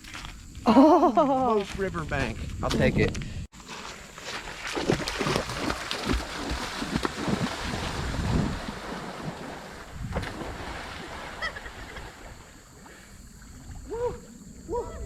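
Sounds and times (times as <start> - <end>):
wind buffeting microphone: 1.9 - 3.5, 6.1 - 10.8
water splashing and churning: 3.6 - 15.0.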